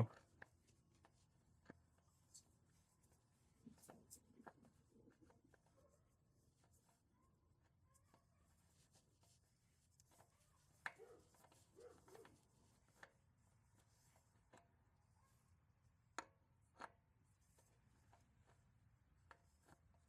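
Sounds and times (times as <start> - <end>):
oil filter clicking and rubbing: 0.1 - 20.0.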